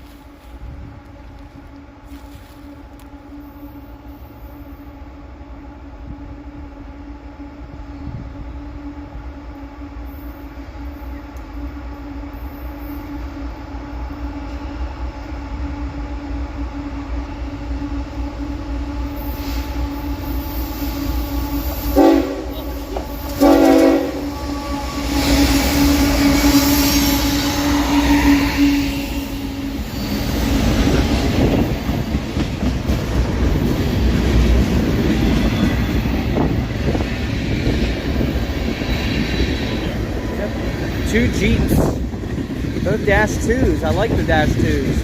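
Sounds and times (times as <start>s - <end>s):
train engine rumble: 0.0s - 45.0s
train air horn blasts: 1.4s - 5.0s, 15.6s - 30.2s.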